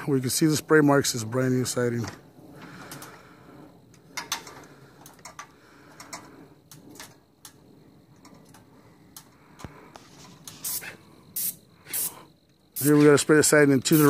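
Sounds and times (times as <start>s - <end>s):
paint spray gun hissing: 10.5s - 12.2s, 12.8s - 13.2s.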